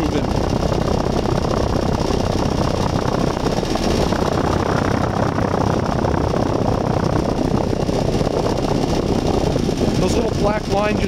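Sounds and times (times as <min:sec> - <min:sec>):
compressor hum: 0:00.0 - 0:11.0
condenser fan whooshing: 0:00.0 - 0:11.0.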